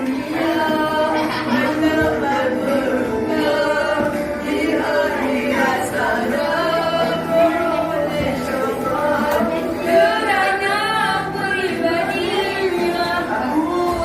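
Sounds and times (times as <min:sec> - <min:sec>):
group singing a cappella: 0:00.0 - 0:14.0.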